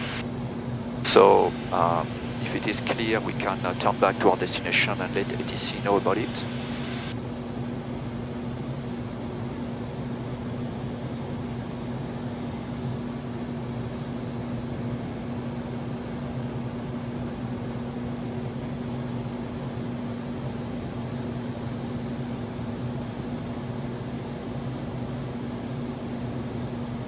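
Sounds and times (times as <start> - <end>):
rush of air in cabin: 0.0 - 0.2, 1.1 - 7.2.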